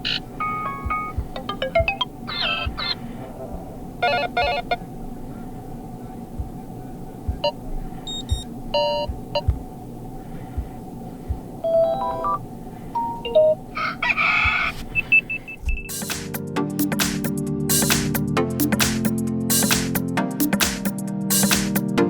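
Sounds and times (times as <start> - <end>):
phone alarm melody snippets: 0.0 - 3.0, 4.0 - 4.8, 7.3 - 9.6, 11.6 - 12.4, 13.0 - 16.1
faint steady hum: 0.0 - 16.0
soft low knocks: 0.7 - 3.9, 6.1 - 9.9, 10.6 - 11.6.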